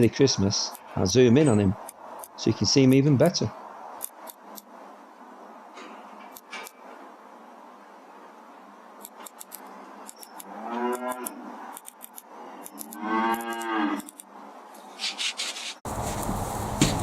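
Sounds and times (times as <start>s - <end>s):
cow mooing: 10.4s - 11.6s, 12.6s - 14.1s.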